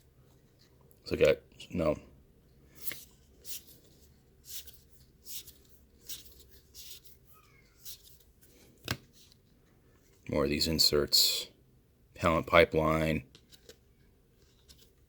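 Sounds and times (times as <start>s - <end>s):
cards sliding against each other: 2.7s - 9.4s.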